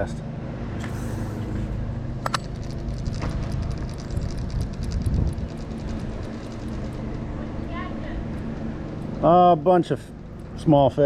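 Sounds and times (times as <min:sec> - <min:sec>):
low outdoor rumble: 0:00.0 - 0:11.0
fishing reel ticking: 0:02.3 - 0:11.0.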